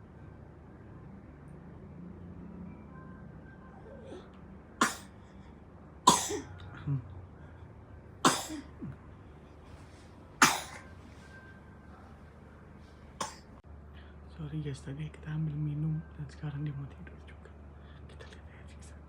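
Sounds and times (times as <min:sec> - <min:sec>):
baby coughing: 0:04.8 - 0:05.1, 0:06.1 - 0:06.5, 0:08.2 - 0:08.9, 0:10.4 - 0:10.9, 0:13.2 - 0:13.4.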